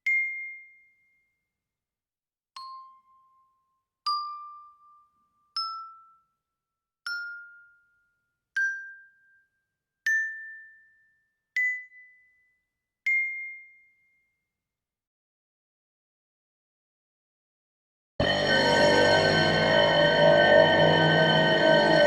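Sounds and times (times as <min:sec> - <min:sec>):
bell ringing in rising pitch: 0:18.2 - 0:22.0.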